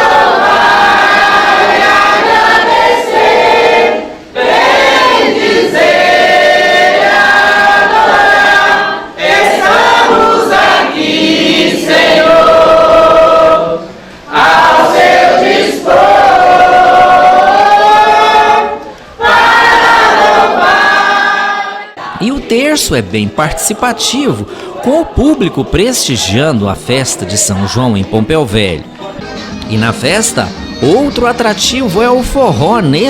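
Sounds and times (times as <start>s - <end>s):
group singing a hymn: 0.0s - 30.4s.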